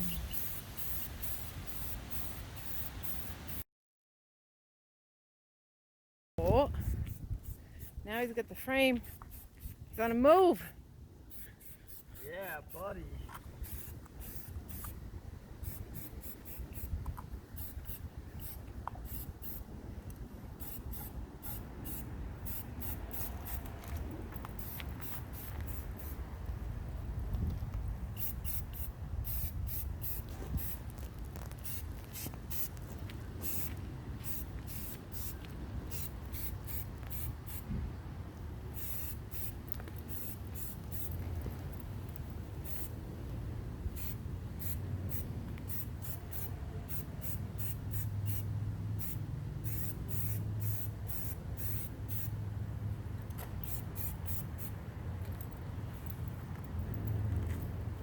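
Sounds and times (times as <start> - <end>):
spray-paint can hissing: 0.0 - 3.6, 9.0 - 9.8, 11.3 - 12.2, 13.6 - 15.0, 15.6 - 16.9, 17.5 - 19.6, 20.6 - 23.7, 24.6 - 26.2, 28.2 - 30.8, 31.5 - 32.8, 33.4 - 37.7, 38.8 - 41.1, 42.6 - 42.9, 43.9 - 52.3, 53.6 - 54.8.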